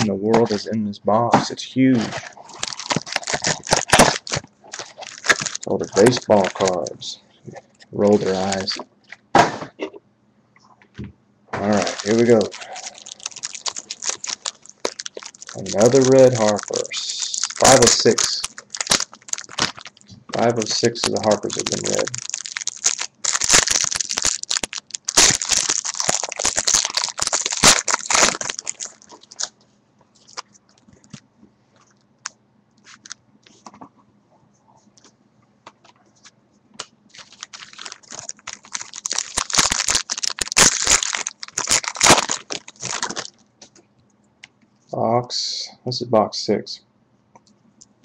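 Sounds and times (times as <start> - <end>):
card packaging crinkling and tearing: 0.0 - 0.7, 1.9 - 7.1, 8.0 - 8.8, 11.6 - 29.5, 30.2 - 31.2, 32.9 - 33.2, 37.1 - 43.4.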